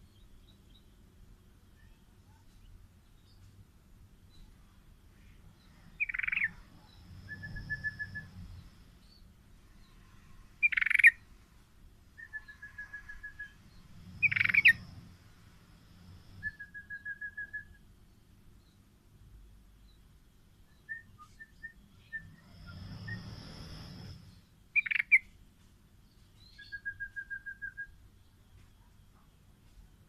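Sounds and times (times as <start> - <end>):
bulbul calling: 6.0 - 6.7, 10.6 - 11.2, 14.2 - 14.9, 24.8 - 25.3.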